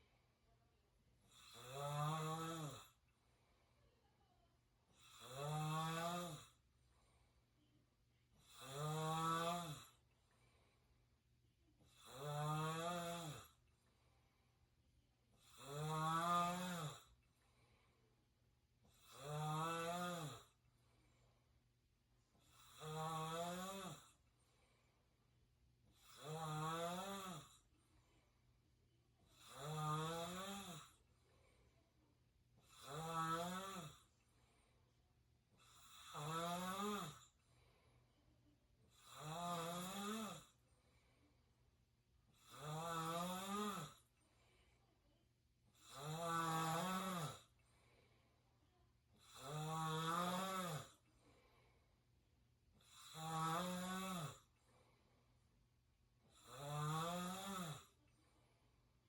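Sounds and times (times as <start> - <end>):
quiet breathing: 0.0 - 26.4, 27.2 - 29.7, 30.6 - 46.2, 46.9 - 49.6, 50.7 - 56.7, 57.6 - 59.0
person snoring: 1.3 - 3.0, 5.0 - 6.6, 8.4 - 10.0, 11.9 - 13.6, 15.4 - 17.1, 18.9 - 20.6, 22.4 - 24.2, 26.0 - 27.6, 29.3 - 31.0, 32.6 - 34.1, 35.6 - 37.3, 38.9 - 40.6, 42.4 - 44.1, 45.8 - 47.5, 49.2 - 51.0, 52.8 - 54.5, 56.3 - 58.0.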